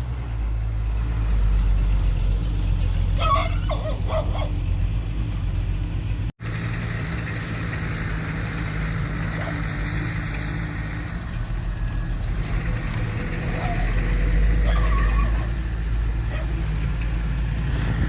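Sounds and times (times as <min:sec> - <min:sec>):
diesel engine rumbling: 0:00.0 - 0:18.0
dog barking: 0:03.2 - 0:04.6, 0:14.6 - 0:15.5, 0:16.3 - 0:16.6.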